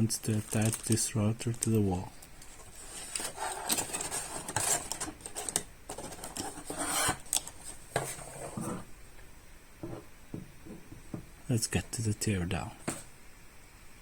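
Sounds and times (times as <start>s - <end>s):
plastic bag rustling: 0.0s - 8.9s.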